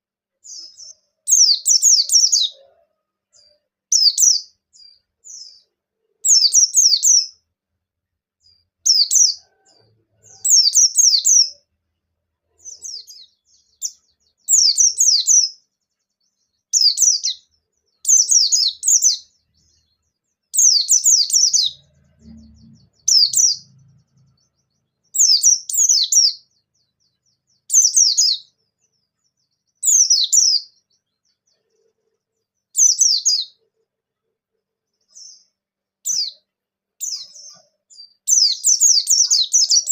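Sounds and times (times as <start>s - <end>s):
bird singing chattering notes: 20.6s - 26.5s, 38.3s - 39.9s.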